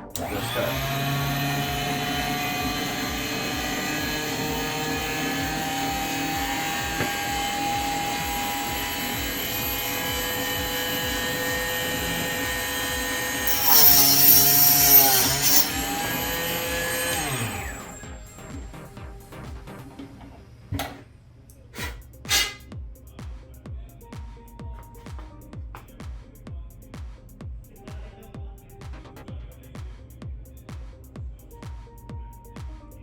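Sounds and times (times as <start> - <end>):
saw blade grinding through tubing: 0.2 - 18.2, 21.8 - 22.7
small saw motor whining: 0.2 - 18.7.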